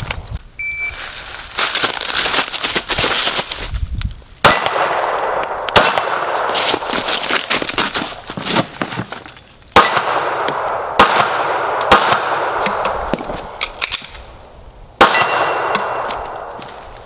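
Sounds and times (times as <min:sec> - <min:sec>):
pistol shots: 0:04.4 - 0:06.4, 0:09.8 - 0:14.0, 0:15.0 - 0:16.6
ringing tone: 0:09.9 - 0:11.0.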